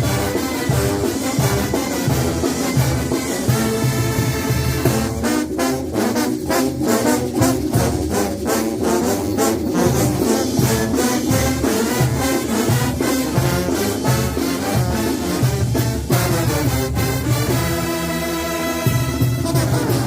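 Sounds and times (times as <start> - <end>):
brass band playing: 0.0 - 20.0
percussion beat: 0.0 - 20.0
tubas playing bass line: 0.0 - 20.0.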